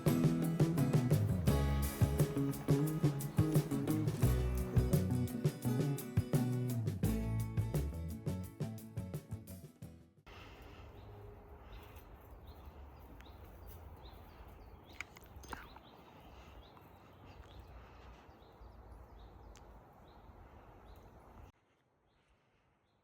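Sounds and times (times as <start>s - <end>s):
steady hiss: 0.0s - 7.6s.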